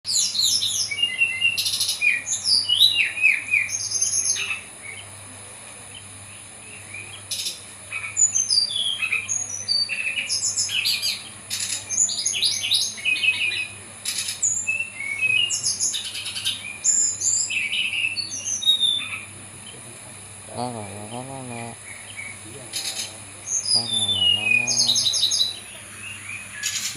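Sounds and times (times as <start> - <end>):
bird singing whistled notes: 22.2 - 26.9.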